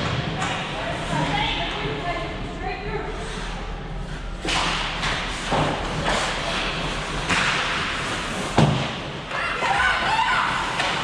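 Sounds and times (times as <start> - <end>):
hockey sticks and puck slaps: 0.0 - 1.3, 4.4 - 11.0.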